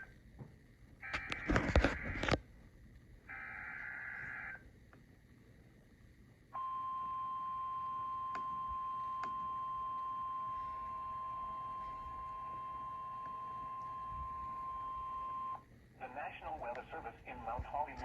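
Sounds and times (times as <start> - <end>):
steady attention tone: 6.5 - 15.7.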